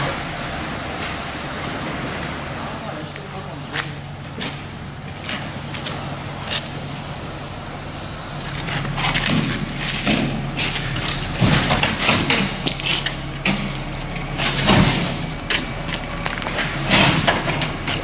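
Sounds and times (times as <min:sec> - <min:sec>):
engine humming: 0:00.0 - 0:18.0
knocks and clattering: 0:08.5 - 0:18.0.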